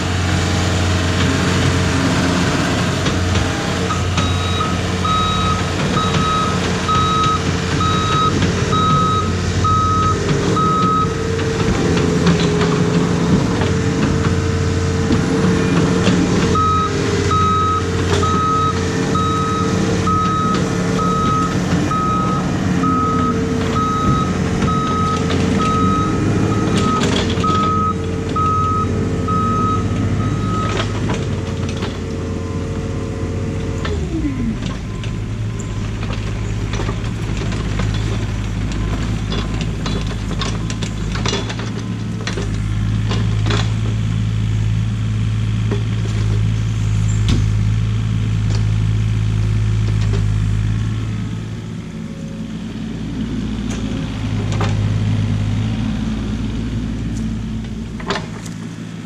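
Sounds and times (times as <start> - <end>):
diesel engine running: 0.0 - 59.0
backup alarm beeping: 3.9 - 11.2, 16.5 - 30.9.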